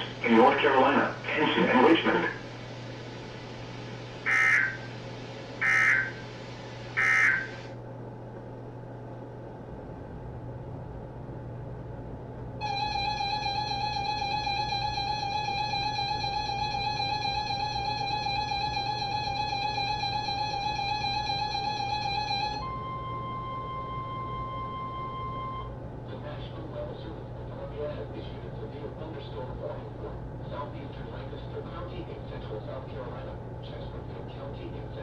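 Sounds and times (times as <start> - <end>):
squawking data bursts: 4.3 - 4.9, 5.6 - 6.2, 7.0 - 7.6
warbling two-tone alert signal: 12.6 - 25.7.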